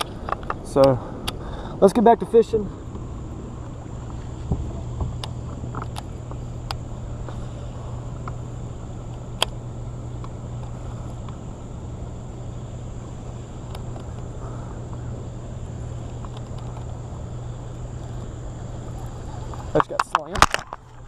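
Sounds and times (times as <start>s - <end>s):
faint insect drone: 0.0s - 21.0s
steady low hum: 0.0s - 21.0s
fishing gear clicks and taps: 19.5s - 20.8s.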